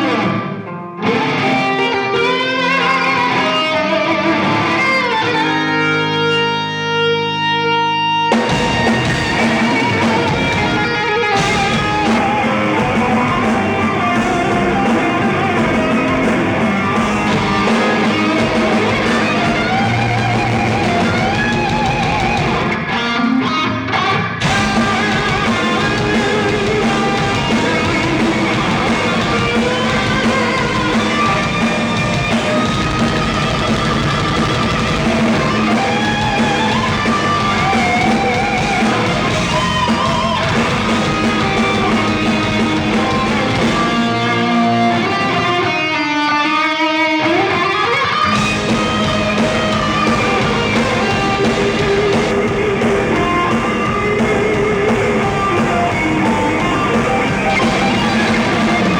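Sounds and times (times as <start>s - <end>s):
heavy rock band playing: 0.0s - 58.9s
lead electric guitar: 0.0s - 58.9s.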